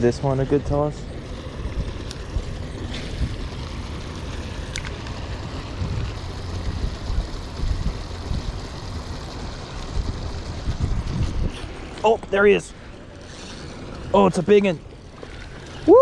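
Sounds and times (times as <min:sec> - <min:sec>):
wind buffeting microphone: 0:00.7 - 0:12.6.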